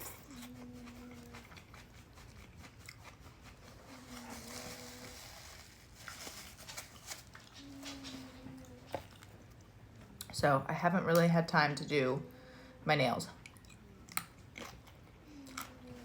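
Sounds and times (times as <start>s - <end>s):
faint clicks and crinkles: 3.9s - 10.4s.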